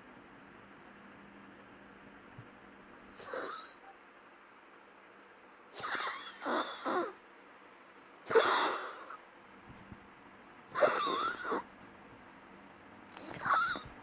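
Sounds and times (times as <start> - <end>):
wheezy coughing: 3.1 - 3.9, 5.7 - 7.2, 8.2 - 9.2, 10.7 - 11.7, 13.2 - 14.0.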